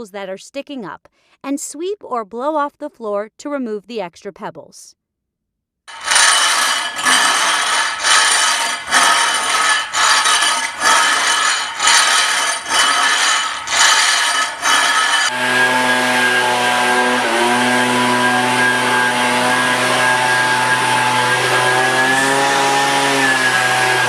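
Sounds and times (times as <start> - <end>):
scraping strokes on stone floor: 5.9 - 15.3
small motor humming: 5.9 - 24.0.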